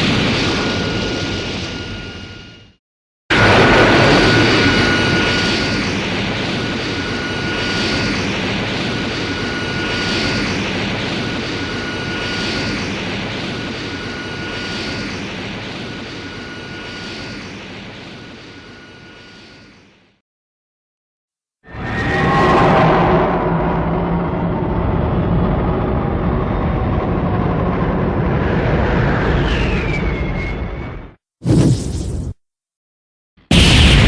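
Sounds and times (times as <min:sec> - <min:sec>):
jet-like rush with high whine: 0:00.0 - 0:20.2, 0:33.5 - 0:34.0.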